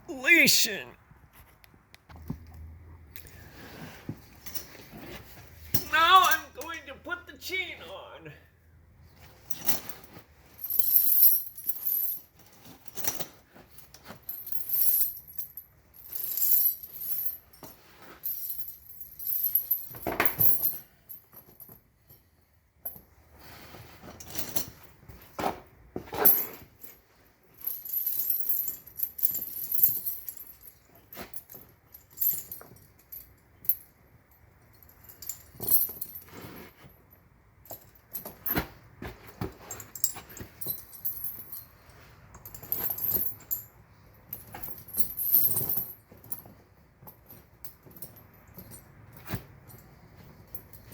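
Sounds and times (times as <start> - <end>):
steel tire chain clinking: 9.5 - 23.2, 26.2 - 38.8, 39.6 - 46.4.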